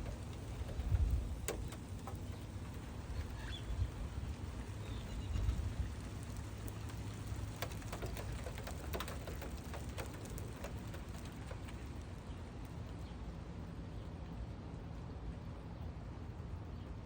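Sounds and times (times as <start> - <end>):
raindrops tapping: 0.0 - 13.1.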